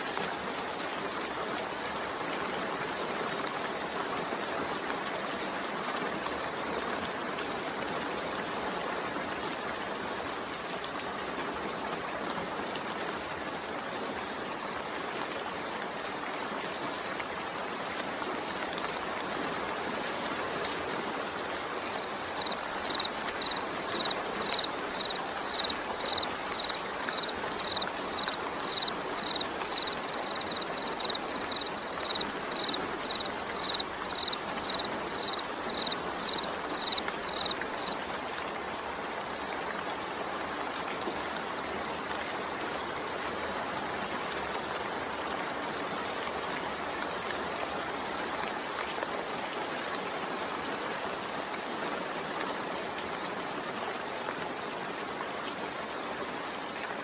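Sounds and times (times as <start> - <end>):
steady rain hiss: 0.0 - 57.0
cricket chirping: 21.9 - 38.0.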